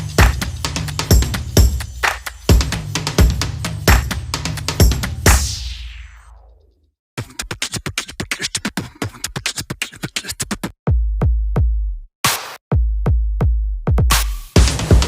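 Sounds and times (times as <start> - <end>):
electronic music with drum machine: 0.0 - 6.5, 12.3 - 15.0.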